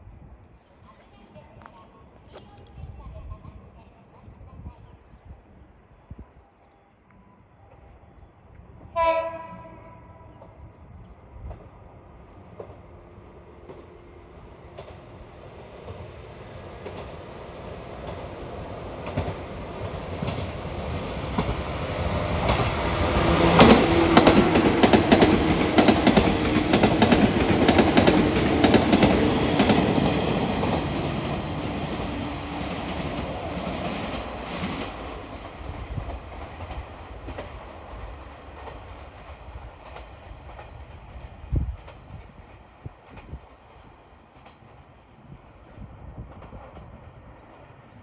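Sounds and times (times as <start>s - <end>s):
train hum: 7.5s - 48.0s
train wheels clicking over rail joints: 22.2s - 40.8s.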